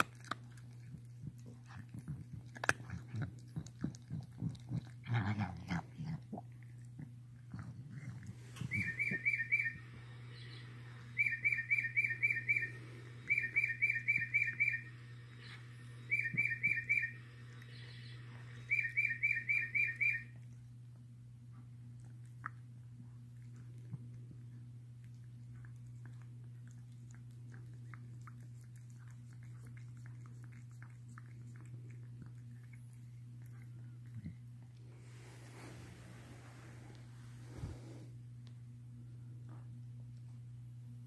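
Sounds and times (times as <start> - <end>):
steady low hum: 0.0 - 41.0
pet breathing with squeaky chirps: 8.3 - 20.4.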